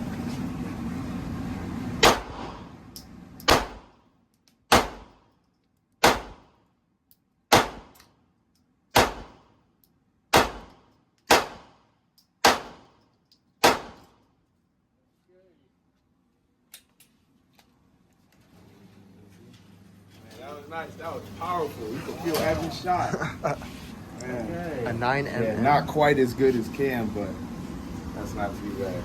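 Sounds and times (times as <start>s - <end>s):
steady background noise: 0.0s - 29.0s
handgun shots: 2.0s - 2.4s, 3.4s - 3.9s, 4.7s - 5.2s, 6.0s - 6.5s, 7.5s - 8.0s, 8.9s - 9.5s, 10.3s - 13.0s, 13.6s - 14.2s.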